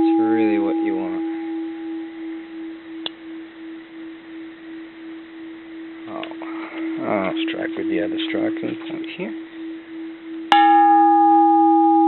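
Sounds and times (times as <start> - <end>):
temple bell ringing: 0.0 - 2.4, 10.5 - 12.0.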